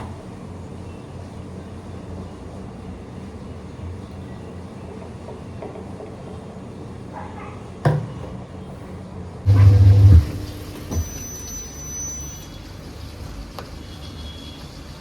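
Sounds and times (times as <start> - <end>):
washing machine low rumble: 9.4 - 11.8
short loud low hum: 9.5 - 11.2
washing machine knock: 9.5 - 11.2.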